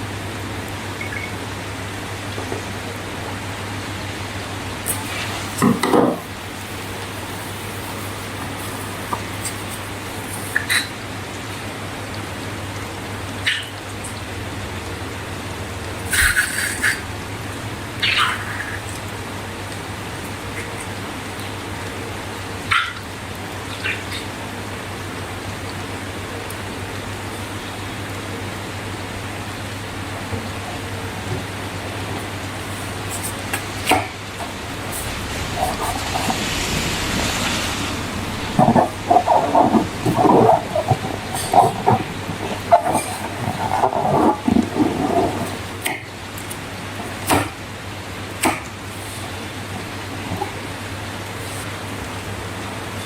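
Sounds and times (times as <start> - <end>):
steady hiss and hum: 0.0 - 53.0
steady noise: 1.5 - 10.7, 28.4 - 53.0.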